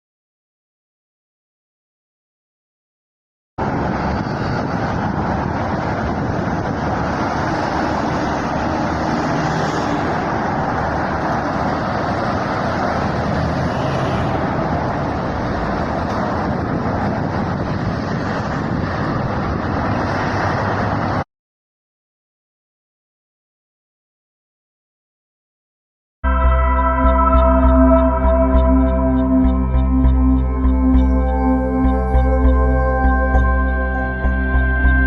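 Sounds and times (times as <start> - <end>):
steady outdoor noise: 3.6 - 21.2, 26.2 - 35.0.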